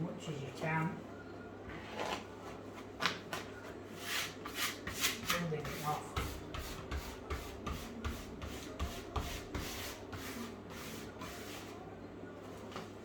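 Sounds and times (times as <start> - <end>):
hand rubbing wallpaper onto wall: 3.8 - 11.8.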